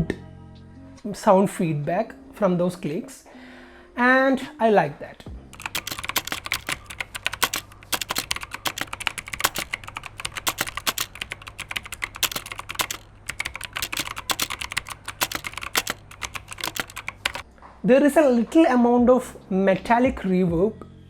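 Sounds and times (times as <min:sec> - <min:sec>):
mechanical keyboard key clicks: 0:05.6 - 0:17.4.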